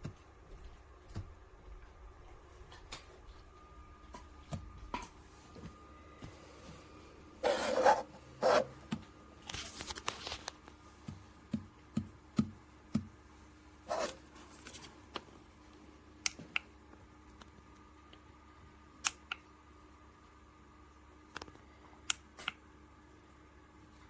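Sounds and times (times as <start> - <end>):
rustling and scraping: 7.4 - 8.8, 9.4 - 10.9, 13.9 - 15.0.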